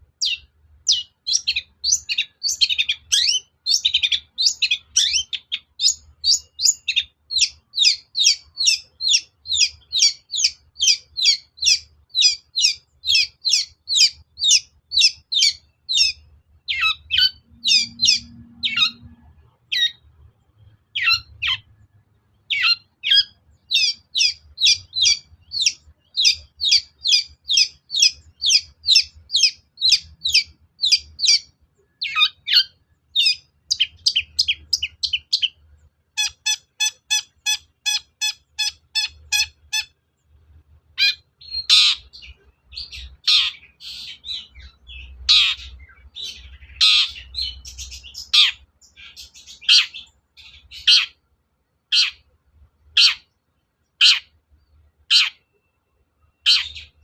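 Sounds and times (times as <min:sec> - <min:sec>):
shrike calling: 0:00.2 - 0:20.0, 0:36.2 - 0:40.0, 0:41.0 - 0:51.2, 0:56.4 - 0:57.0.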